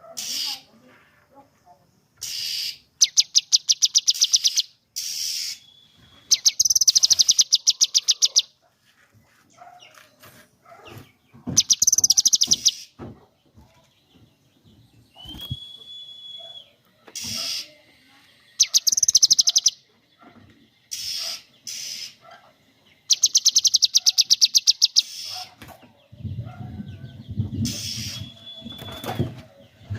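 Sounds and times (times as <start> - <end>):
bird harsh hissing calls: 0.2 - 0.7, 2.2 - 5.6, 17.2 - 19.7, 20.9 - 22.2, 23.1 - 25.6, 27.6 - 28.3.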